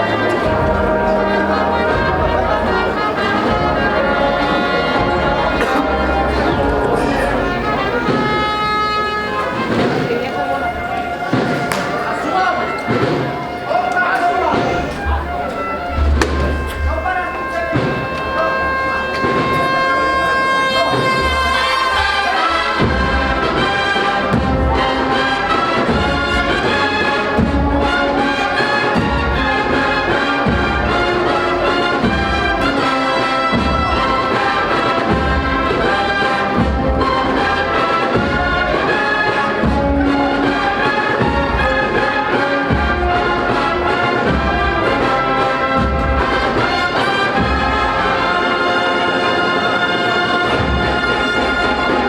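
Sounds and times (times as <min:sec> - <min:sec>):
steady low drum beat: 0:00.0 - 0:12.2, 0:22.8 - 0:48.4
brass band playing a march: 0:00.0 - 0:52.0.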